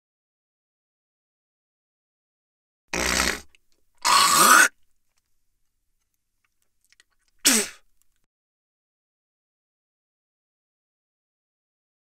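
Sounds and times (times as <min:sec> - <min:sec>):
person spitting: 0:02.9 - 0:04.8, 0:07.4 - 0:07.9.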